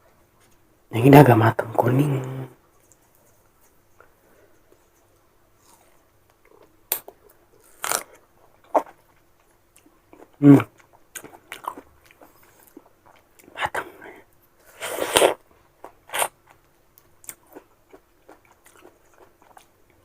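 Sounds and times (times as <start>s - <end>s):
crunchy chewing of mango: 4.7s - 13.6s, 14.6s - 20.0s.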